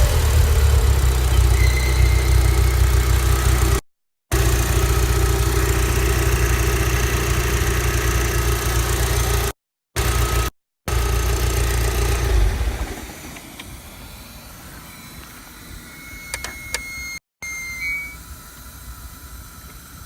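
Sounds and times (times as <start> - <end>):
car engine running: 0.0 - 13.7
short high beep: 1.3 - 2.9, 16.0 - 18.2.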